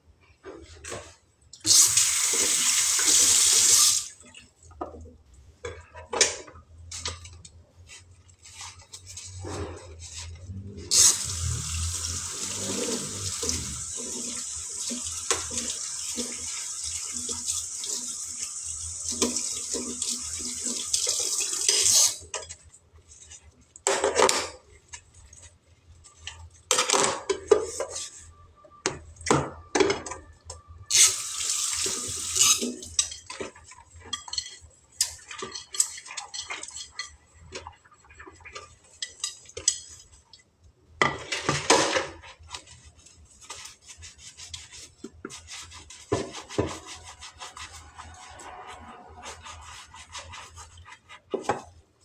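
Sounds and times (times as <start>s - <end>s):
tap running into sink: 10.9s - 22.0s.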